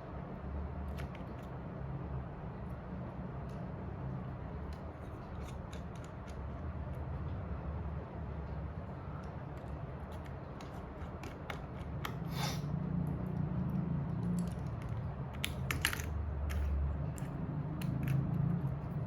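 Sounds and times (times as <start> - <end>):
small tools clicking: 13.6 - 19.0.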